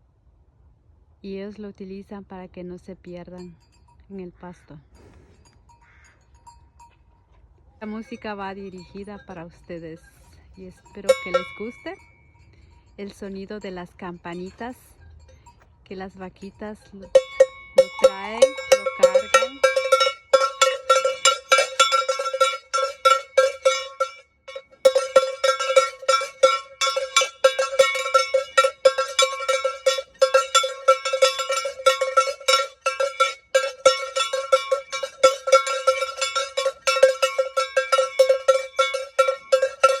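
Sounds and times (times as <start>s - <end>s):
cow bell clanking: 3.2s - 40.0s.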